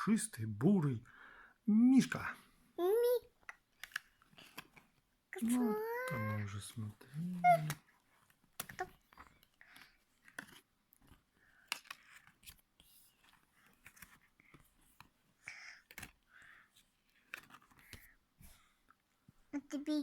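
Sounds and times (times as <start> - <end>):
board book pages turning: 3.0 - 19.4.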